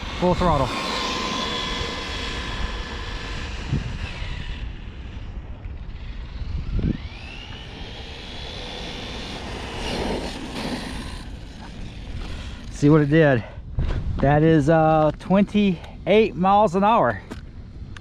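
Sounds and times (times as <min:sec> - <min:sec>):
electric motor whining: 0:00.0 - 0:13.2
wind rumble on microphone: 0:00.0 - 0:16.4.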